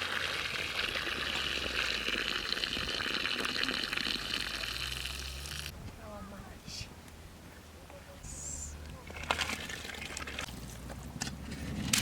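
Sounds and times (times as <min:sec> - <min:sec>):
water pouring: 0:00.0 - 0:05.7, 0:09.1 - 0:10.5.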